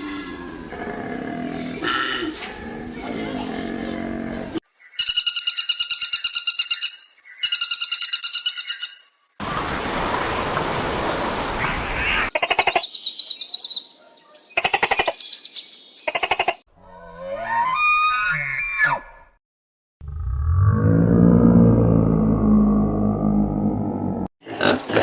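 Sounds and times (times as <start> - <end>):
high-pitched chirping trills: 4.9 - 9.1.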